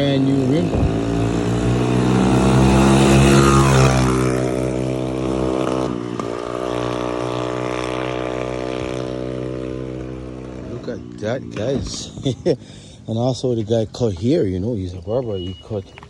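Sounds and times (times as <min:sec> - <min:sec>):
motorcycle engine revving: 0:00.0 - 0:12.6.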